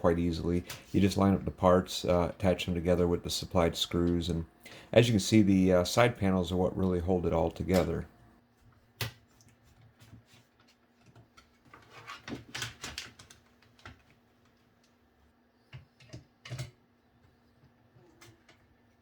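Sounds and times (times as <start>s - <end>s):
plastic parts clicking and knocking: 11.0s - 14.2s, 15.7s - 16.8s.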